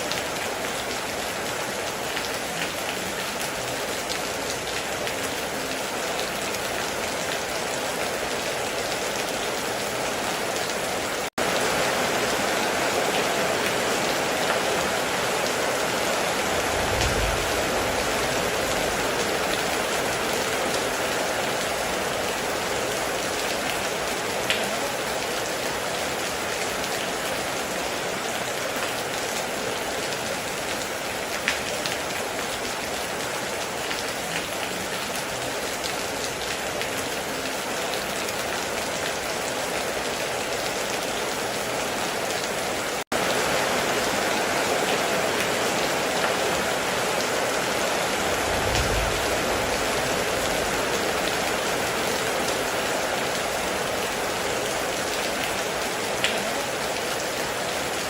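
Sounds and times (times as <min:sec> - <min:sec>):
heavy rain on a metal roof: 0:00.0 - 0:58.0
low rumble: 0:16.4 - 0:19.4, 0:48.2 - 0:51.0.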